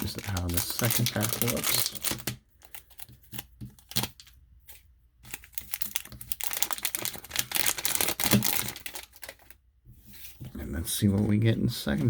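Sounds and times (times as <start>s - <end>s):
wrapper tearing and crinkling: 0.0s - 3.0s, 5.2s - 9.6s.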